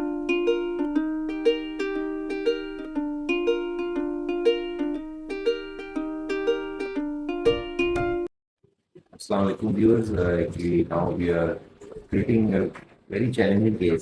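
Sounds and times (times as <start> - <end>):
plucked string tune: 0.0 - 8.3.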